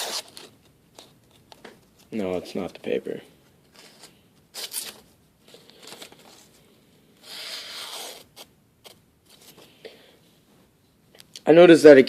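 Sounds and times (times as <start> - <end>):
paper rustling: 3.6 - 6.6.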